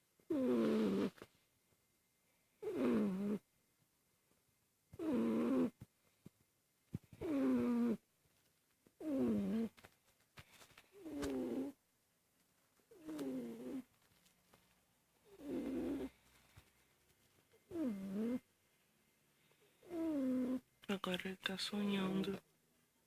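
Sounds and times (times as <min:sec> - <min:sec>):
dog snoring: 0:00.3 - 0:01.2, 0:02.6 - 0:03.4, 0:05.0 - 0:05.8, 0:07.2 - 0:08.0, 0:09.0 - 0:09.7, 0:11.0 - 0:11.8, 0:12.9 - 0:13.9, 0:15.2 - 0:16.2, 0:17.7 - 0:18.5, 0:19.8 - 0:20.6.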